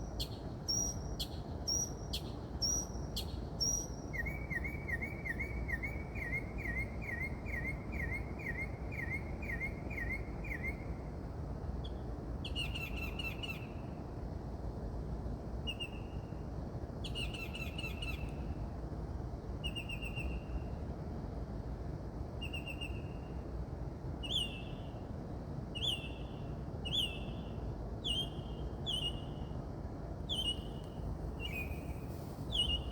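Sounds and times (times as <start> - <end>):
songbird singing: 0.0 - 11.0, 11.8 - 13.9, 15.6 - 16.3, 17.0 - 18.6, 19.6 - 20.7, 22.4 - 23.3, 24.2 - 25.1, 25.8 - 32.9
low background hum: 0.0 - 32.9.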